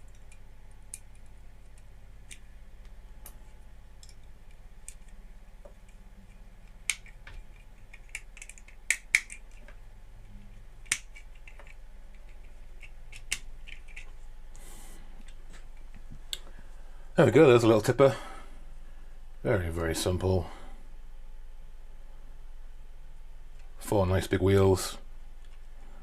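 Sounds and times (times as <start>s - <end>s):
faint low hum: 0.0s - 26.0s
plastic bricks clicking together: 6.8s - 9.8s.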